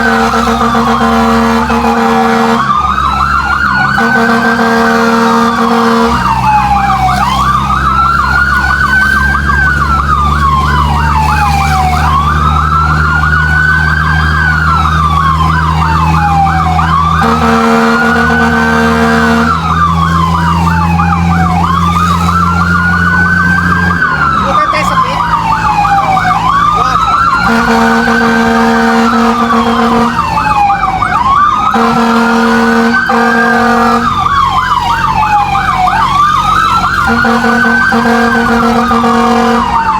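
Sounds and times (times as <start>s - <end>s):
horn blasts: 0.0s - 2.8s, 3.9s - 6.4s, 17.2s - 19.9s, 27.3s - 30.4s, 31.7s - 34.2s, 37.0s - 39.9s
electronic siren wailing and yelping: 0.0s - 39.9s
truck engine droning: 0.0s - 39.9s.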